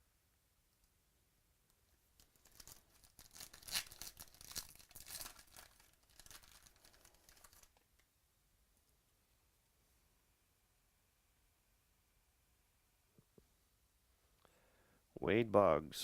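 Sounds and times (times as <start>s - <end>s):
card wrapping tearing and crinkling: 2.2s - 7.8s.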